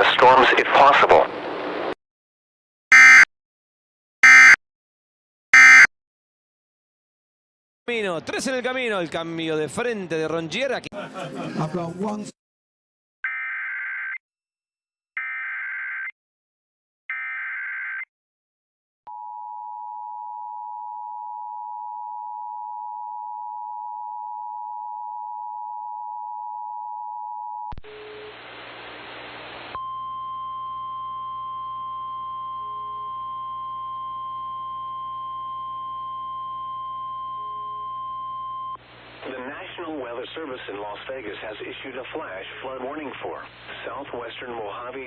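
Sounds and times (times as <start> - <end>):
radio static: 0.0 - 2.0, 39.0 - 45.0
warning alarm tone: 2.9 - 3.3, 4.2 - 4.6, 5.6 - 5.9.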